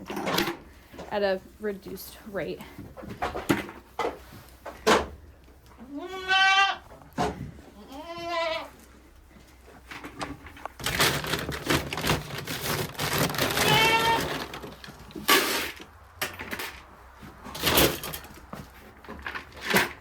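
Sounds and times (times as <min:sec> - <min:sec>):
goat bleat: 0:05.8 - 0:06.8, 0:07.8 - 0:08.8, 0:13.6 - 0:14.3
crackling and crunching: 0:09.9 - 0:16.9.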